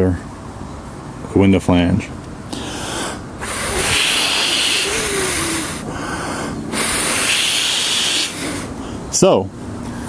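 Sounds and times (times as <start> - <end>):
breath blowing across metal: 2.6 - 8.9
high-pitched buzz: 3.4 - 8.8.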